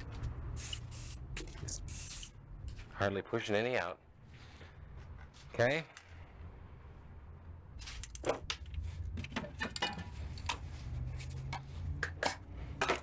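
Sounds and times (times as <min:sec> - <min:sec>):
spray can sputtering: 0:00.5 - 0:02.4.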